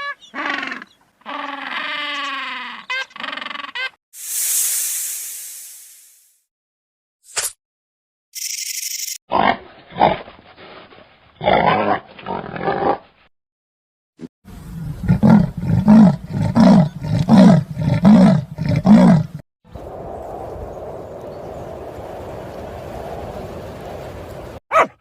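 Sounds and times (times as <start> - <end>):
short hiss: 4.2 - 6.4
big cat roaring: 15.0 - 19.4.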